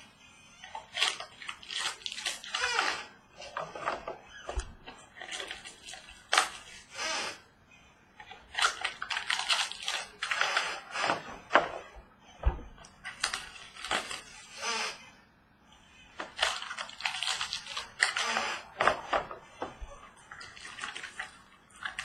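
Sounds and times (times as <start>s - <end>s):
card packaging crinkling: 0.8s - 2.8s, 8.5s - 10.4s, 16.2s - 18.3s, 20.3s - 22.0s.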